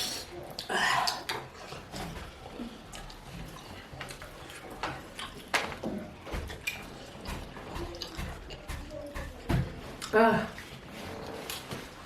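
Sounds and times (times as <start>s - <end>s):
chewing and mouth noises: 0.0s - 12.0s.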